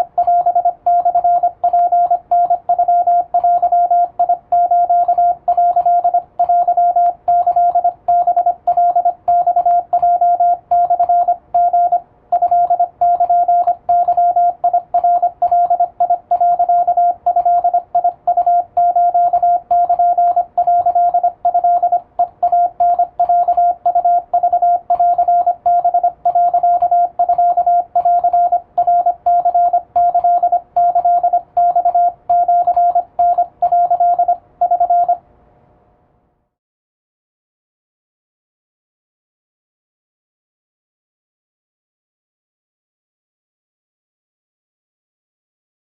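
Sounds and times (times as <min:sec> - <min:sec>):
morse code beeps: 0:00.0 - 0:35.2.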